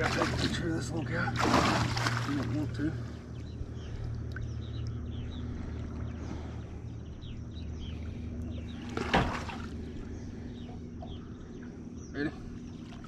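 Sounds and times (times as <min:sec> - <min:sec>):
birds chirping: 0:00.0 - 0:13.0
boat motor humming: 0:00.0 - 0:13.0.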